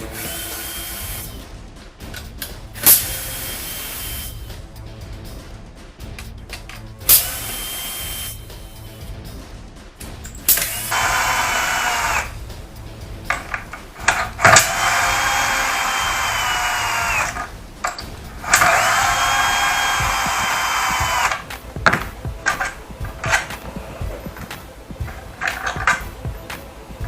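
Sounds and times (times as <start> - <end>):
power drill running: 0.0 - 1.4, 7.1 - 8.4, 10.5 - 12.4, 14.0 - 23.5.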